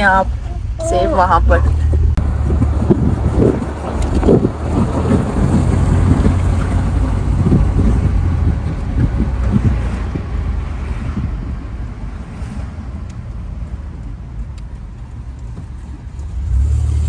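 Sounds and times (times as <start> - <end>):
road rumble: 0.0 - 17.0
wind buffeting microphone: 0.0 - 17.0.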